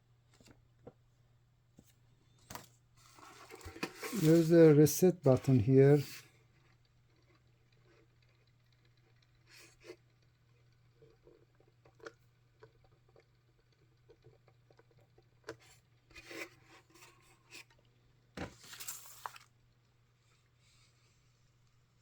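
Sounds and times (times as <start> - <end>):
rubbing and scraping: 3.0 - 6.2.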